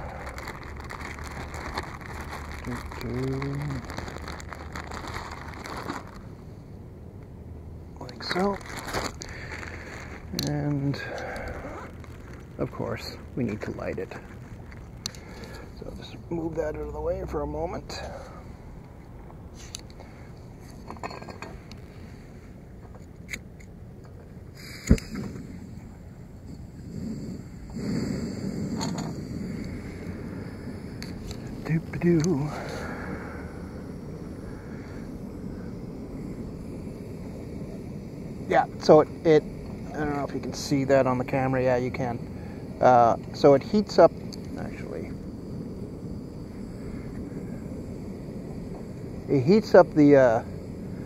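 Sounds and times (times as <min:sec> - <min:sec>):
stove hissing: 0:00.0 - 0:06.5, 0:08.0 - 0:18.9, 0:24.3 - 0:51.0
wind rumble: 0:00.0 - 0:20.7, 0:24.4 - 0:51.0.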